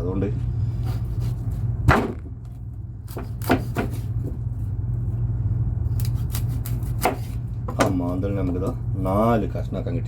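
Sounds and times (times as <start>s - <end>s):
steady low hum: 0.0s - 10.0s
knife chopping fish on a board: 3.1s - 4.4s, 6.0s - 8.7s.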